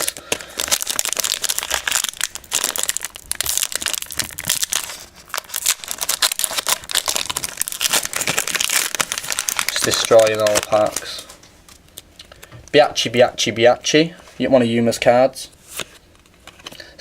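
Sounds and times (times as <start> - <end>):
foil wrappers tearing and crinkling: 0.0 - 11.4.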